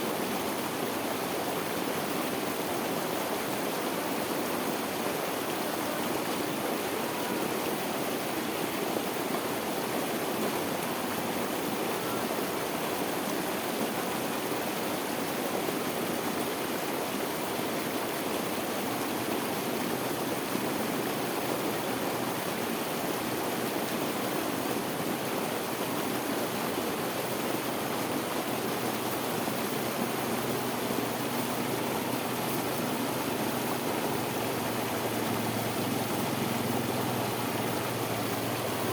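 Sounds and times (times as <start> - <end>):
water pouring over waterfall: 28.5 - 38.9.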